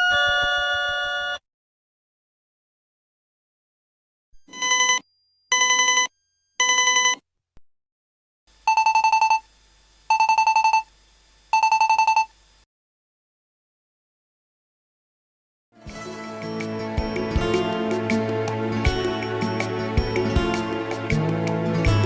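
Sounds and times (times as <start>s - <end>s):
signal chime ringing: 4.5s - 7.2s, 8.7s - 9.4s, 10.1s - 10.8s.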